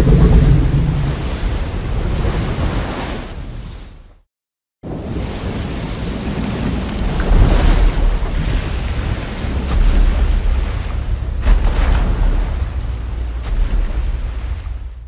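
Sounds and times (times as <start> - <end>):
deep monster rumbling: 0.0 - 2.7, 8.0 - 15.0.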